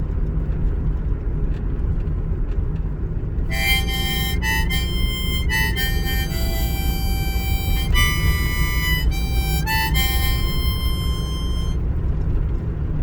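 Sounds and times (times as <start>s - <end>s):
harmonica music: 3.5s - 11.8s.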